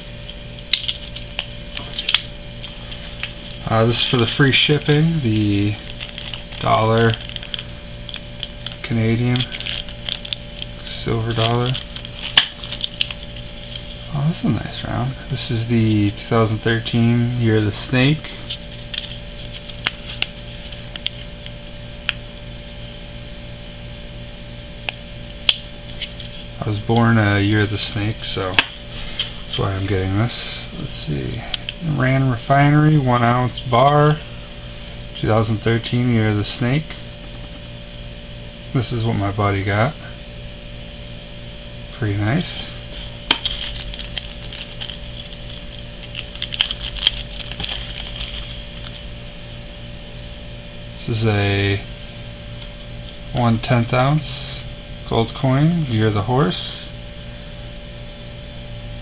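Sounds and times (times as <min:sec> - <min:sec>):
low electrical hum: 0:00.0 - 0:59.0
clicks and taps handling coin packaging: 0:43.3 - 0:49.0.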